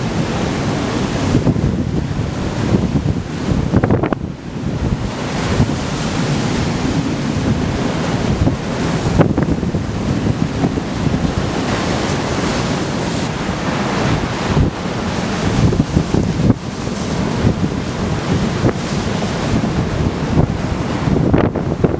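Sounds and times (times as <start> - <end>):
heavy surf: 0.0 - 21.9
wind buffeting microphone: 0.0 - 21.9.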